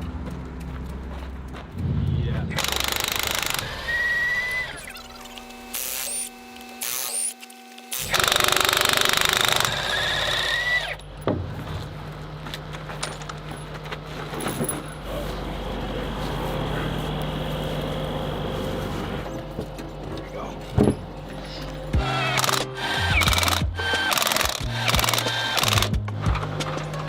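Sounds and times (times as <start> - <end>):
engine humming: 0.0 - 5.8, 8.1 - 27.0
short rising whine: 1.8 - 7.4
impact wrench hammering rattle: 2.6 - 4.0.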